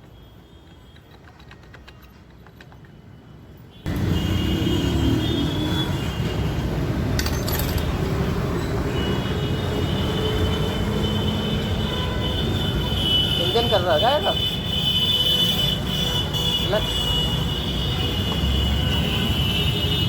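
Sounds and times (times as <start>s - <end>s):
metallic clatter: 7.1s - 8.1s.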